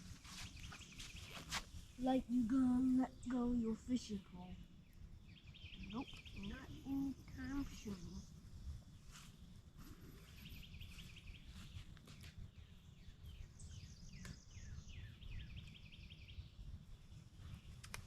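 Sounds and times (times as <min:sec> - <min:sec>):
low outdoor rumble: 0:01.7 - 0:18.0
bird trilling and chirping: 0:02.9 - 0:08.3.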